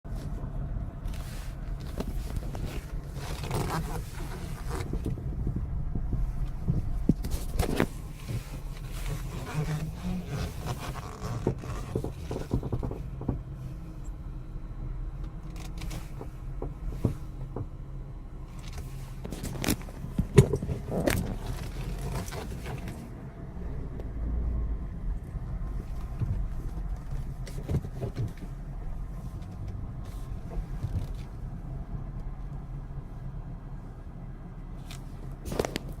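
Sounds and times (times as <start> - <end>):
car engine rumble: 0.0 - 36.0
engine knocking and clicking: 0.1 - 36.0.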